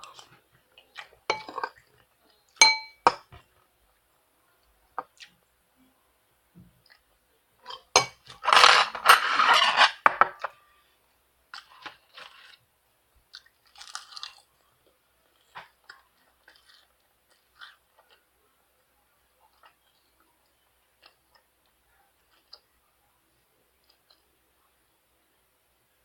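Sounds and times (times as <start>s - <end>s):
person chewing crunchy food: 11.6s - 12.6s, 13.3s - 18.3s.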